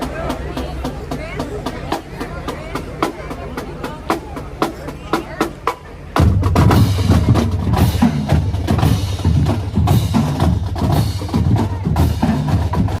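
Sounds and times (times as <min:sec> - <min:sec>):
marching drumline: 0:00.0 - 0:13.0
bass drum beats: 0:06.2 - 0:13.0.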